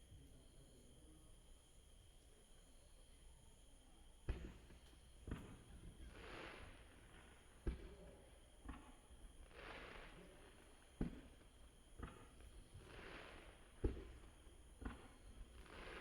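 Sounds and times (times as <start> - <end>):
soft crackling hiss: 4.3 - 16.0
distant fireworks bursting: 5.3 - 16.0.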